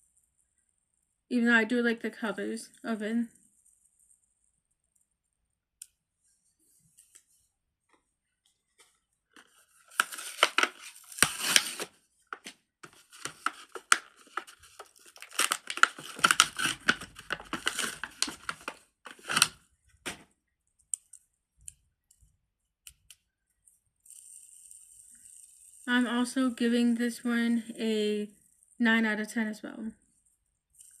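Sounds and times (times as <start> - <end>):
packaging crinkling and tearing: 9.4 - 19.6.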